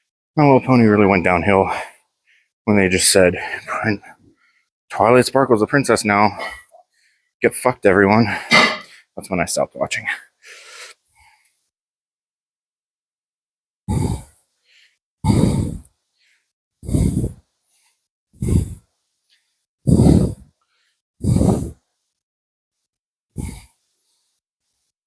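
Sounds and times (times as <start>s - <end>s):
man breathing hard: 10.4s - 11.5s, 13.9s - 21.8s, 23.4s - 24.4s.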